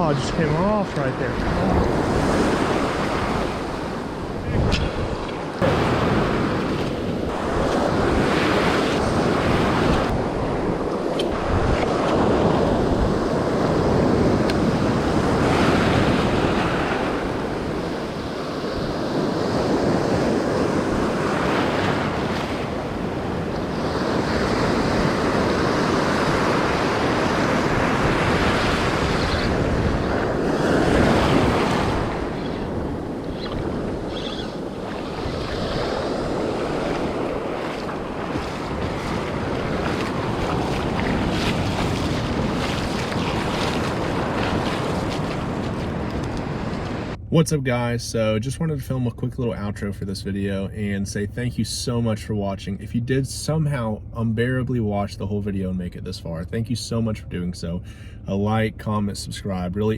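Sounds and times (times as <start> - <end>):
wind buffeting microphone: 0.0 - 47.4
surf breaking on beach: 0.0 - 48.0.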